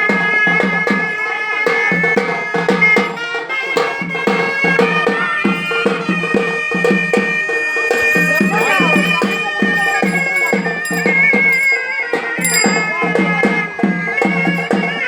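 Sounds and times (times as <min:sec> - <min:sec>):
quick steady drumbeat: 0:00.0 - 0:15.0
reedy wind instrument droning: 0:00.0 - 0:15.0.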